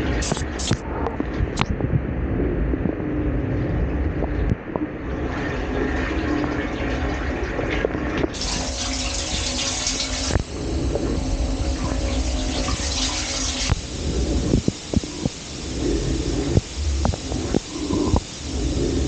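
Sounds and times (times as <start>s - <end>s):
low steady rumble: 0.0s - 19.0s
dishwasher water spraying: 8.3s - 15.5s.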